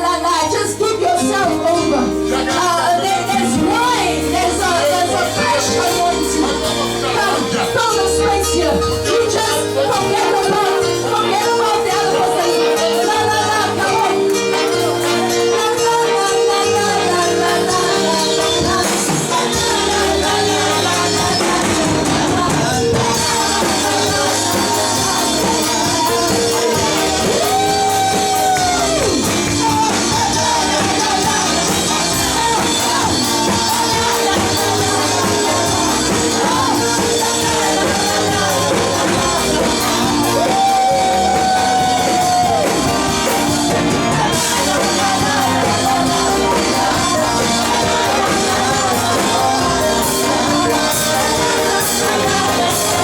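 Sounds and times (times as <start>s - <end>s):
band playing: 0.0s - 53.0s
congregation singing: 0.0s - 53.0s
people shouting: 23.4s - 33.4s, 37.6s - 49.2s.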